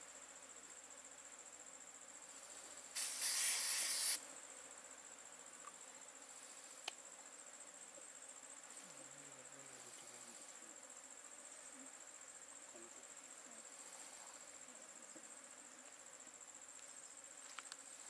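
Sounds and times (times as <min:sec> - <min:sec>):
insects chirring: 0:00.0 - 0:18.0
loud hiss: 0:02.4 - 0:04.2.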